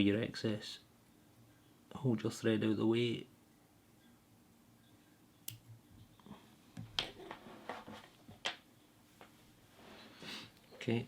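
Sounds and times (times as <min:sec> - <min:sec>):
scissors snipping: 0:05.5 - 0:05.7.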